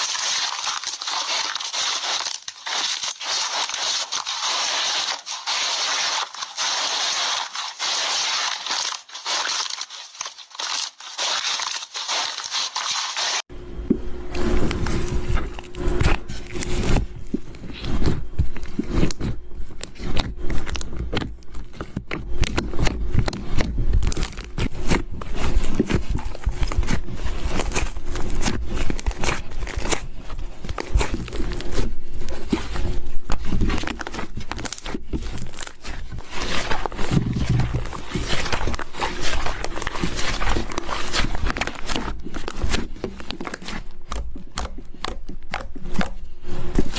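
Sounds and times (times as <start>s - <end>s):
slime squishing and popping: 0.0s - 13.0s, 33.3s - 46.2s.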